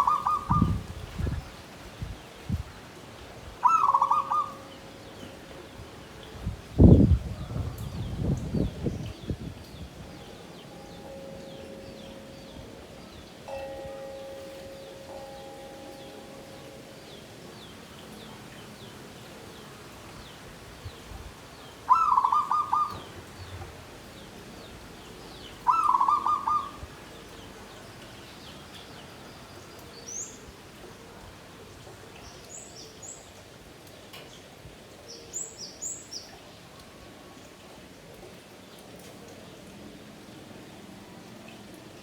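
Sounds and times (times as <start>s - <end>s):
dove cooing: 0.0s - 0.8s, 3.6s - 4.6s, 21.9s - 23.1s, 25.6s - 26.8s.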